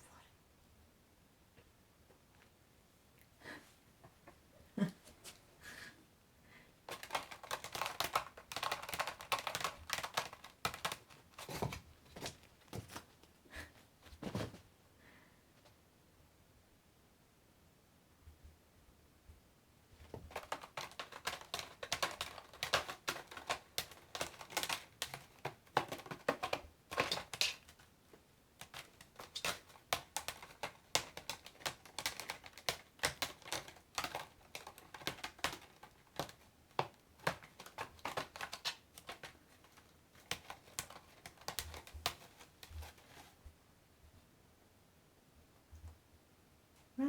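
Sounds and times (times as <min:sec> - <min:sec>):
crinkly plastic being handled: 0:06.9 - 0:14.6, 0:20.0 - 0:27.9, 0:28.6 - 0:43.4.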